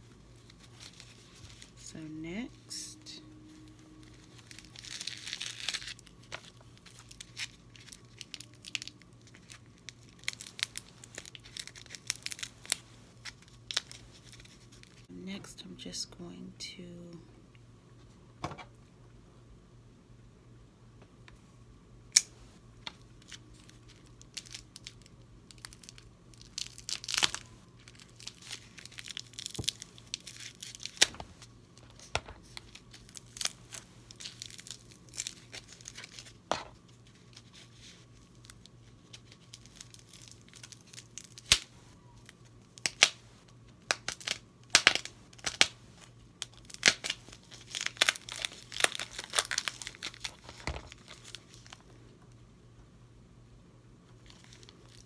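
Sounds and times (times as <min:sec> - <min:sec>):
packaging crinkling and tearing: 0:00.3 - 0:01.8, 0:02.8 - 0:15.1, 0:22.9 - 0:43.2, 0:43.8 - 0:52.0, 0:54.2 - 0:55.0.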